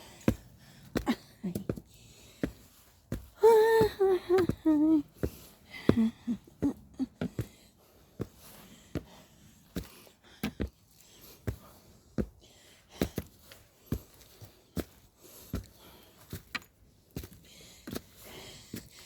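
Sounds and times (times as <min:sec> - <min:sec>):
footsteps on trail steps: 0:00.0 - 0:12.4.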